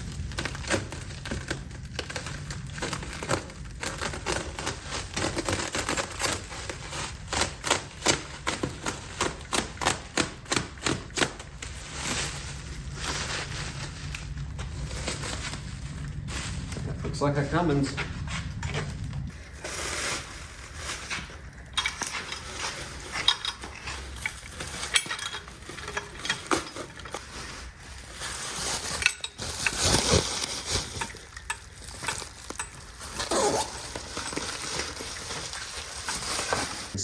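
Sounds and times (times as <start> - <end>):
loose metal hardware clinking: 21.7 - 27.1.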